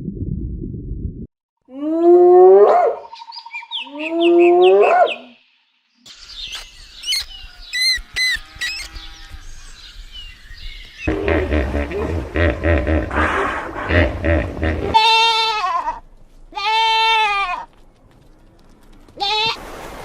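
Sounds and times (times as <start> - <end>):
faint outdoor background: 1.6 - 19.6
birds chirping: 3.0 - 15.0.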